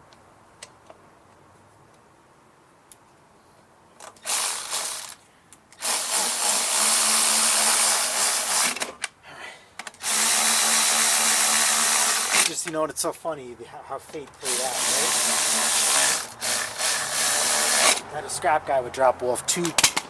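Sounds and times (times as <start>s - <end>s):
power tool motor running: 4.2s - 5.2s, 5.8s - 8.8s, 10.0s - 12.5s, 14.4s - 18.0s.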